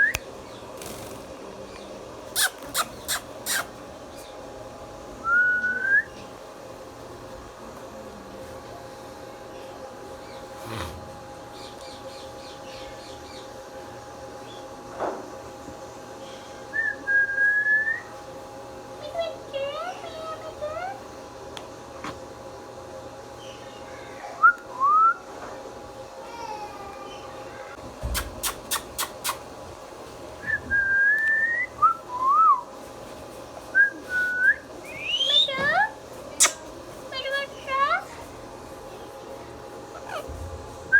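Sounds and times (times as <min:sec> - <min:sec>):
parrot chirping: 0:02.4 - 0:03.7, 0:34.9 - 0:35.8, 0:36.4 - 0:36.6, 0:39.9 - 0:40.3
parrot whistling: 0:02.4 - 0:03.7, 0:33.8 - 0:35.7.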